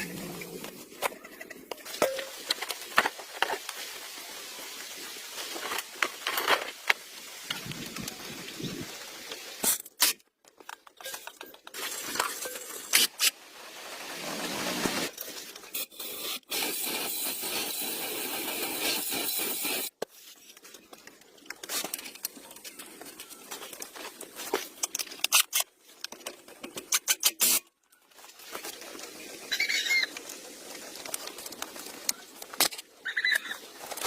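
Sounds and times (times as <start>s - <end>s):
clicks and clinks of metal parts: 9.6s - 13.1s.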